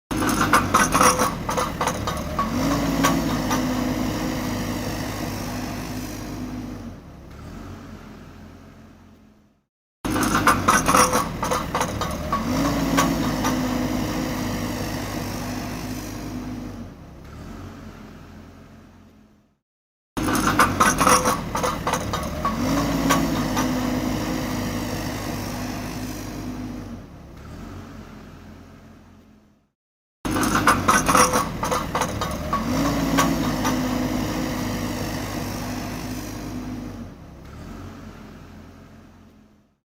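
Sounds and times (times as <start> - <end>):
metallic clanks and rattles: 0.1 - 7.2, 10.1 - 13.9, 20.2 - 24.1, 30.3 - 34.2
heavy equipment engine running: 0.1 - 9.4, 10.1 - 17.4, 20.2 - 27.5, 30.3 - 37.6.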